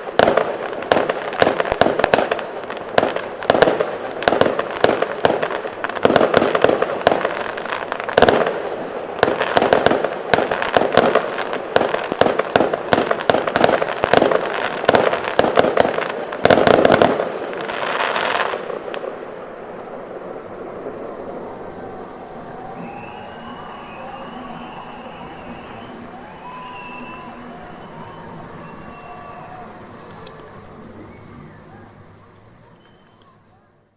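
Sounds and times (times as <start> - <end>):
firework hiss: 0.0 - 33.4
fireworks bangs and crackling: 0.0 - 33.8.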